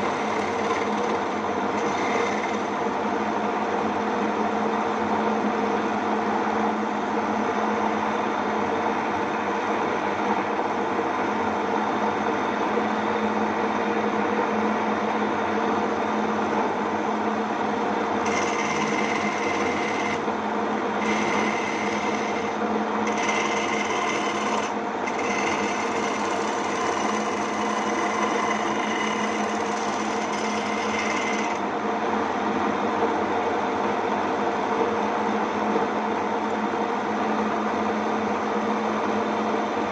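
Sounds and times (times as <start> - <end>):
cutting tool scraping spinning wood: 0.0 - 3.0, 18.2 - 31.6
lathe motor humming: 0.0 - 3.1, 18.1 - 31.7.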